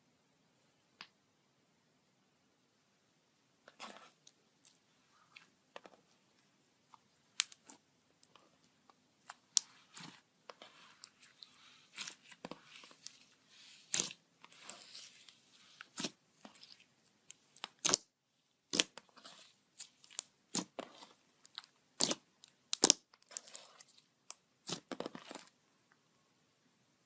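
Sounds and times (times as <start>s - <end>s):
slime popping and crackling: 13.8s - 18.1s, 18.7s - 25.4s.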